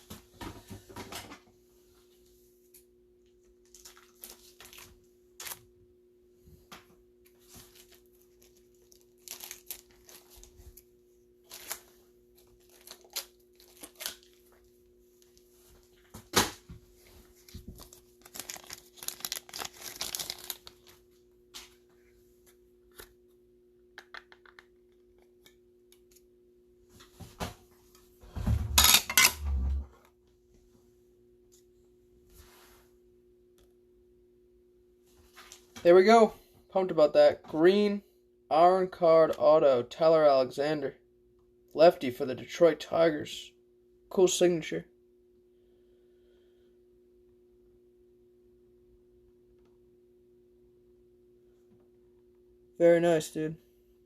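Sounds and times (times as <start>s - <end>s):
plastic packaging crinkling and tearing: 3.6s - 5.7s, 7.4s - 15.4s, 17.4s - 21.1s.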